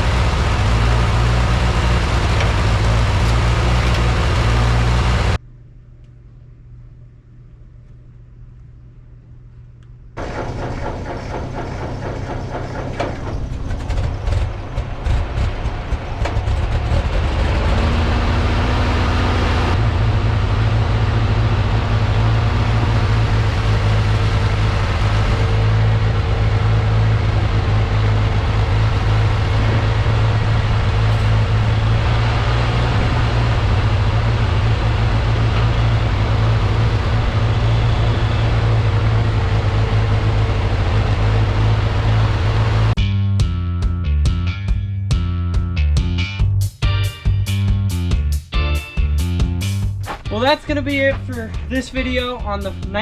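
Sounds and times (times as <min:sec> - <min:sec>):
engine knocks: 0:00.0 - 0:05.4, 0:10.2 - 0:43.5
tractor engine running: 0:00.0 - 0:05.4, 0:10.2 - 0:53.0.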